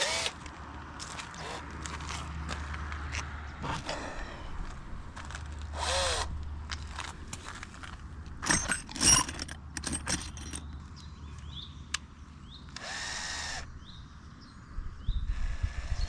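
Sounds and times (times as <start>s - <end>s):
knocks and clatter of handling: 7.3s - 10.8s
small motor running: 12.8s - 13.7s.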